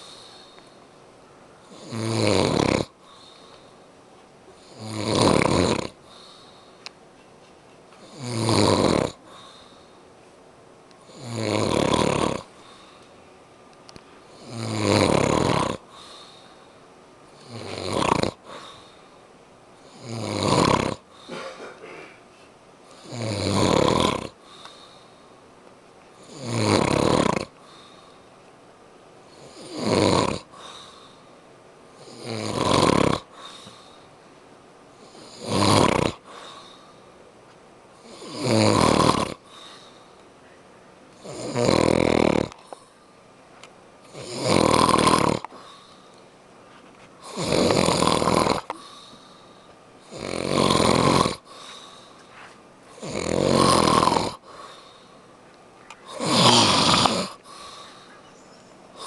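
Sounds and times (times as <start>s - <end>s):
quiet breathing: 0.0s - 1.8s, 2.9s - 4.8s, 5.9s - 8.2s, 9.2s - 10.4s, 12.4s - 14.5s, 15.8s - 17.8s, 18.4s - 20.1s, 24.3s - 25.5s, 27.5s - 28.4s, 30.4s - 32.2s, 33.2s - 35.5s, 36.2s - 37.2s, 39.4s - 41.2s, 42.5s - 43.3s, 45.4s - 47.8s, 48.4s - 50.2s, 51.4s - 53.1s, 54.0s - 59.0s
person snoring loudly: 1.7s - 3.2s, 4.6s - 6.0s, 8.0s - 9.6s, 11.0s - 12.5s, 14.3s - 16.2s, 17.4s - 18.8s, 19.8s - 21.4s, 22.9s - 24.4s, 26.2s - 27.8s, 29.3s - 30.9s, 32.0s - 33.7s, 35.0s - 36.6s, 38.0s - 39.6s, 41.2s - 42.6s, 44.1s - 45.8s, 47.2s - 49.1s, 50.0s - 51.8s, 52.9s - 54.9s, 56.0s - 57.9s.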